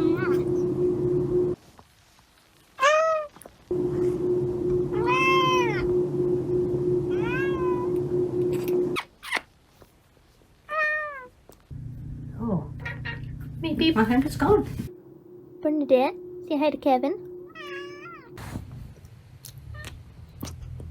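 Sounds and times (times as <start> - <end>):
steady hum: 0.0 - 1.6, 3.7 - 9.0, 11.7 - 19.3
cat meowing: 2.8 - 3.4, 5.0 - 5.8, 7.1 - 8.0, 10.7 - 11.4, 12.8 - 13.3, 17.5 - 18.4.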